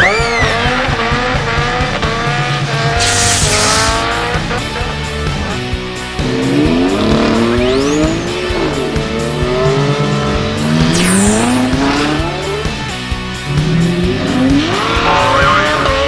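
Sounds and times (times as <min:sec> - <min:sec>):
background music: 0:00.0 - 0:16.0
race car engine revving: 0:00.0 - 0:16.0
tire squeals: 0:02.9 - 0:12.8, 0:13.8 - 0:16.0.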